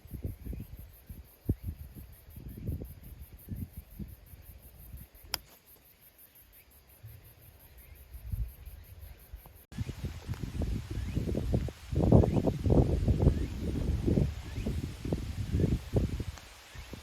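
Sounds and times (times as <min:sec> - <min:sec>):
wind buffeting microphone: 0:00.0 - 0:05.2, 0:08.1 - 0:17.0
insects chirping: 0:00.0 - 0:17.0
sharp click: 0:05.3 - 0:05.6.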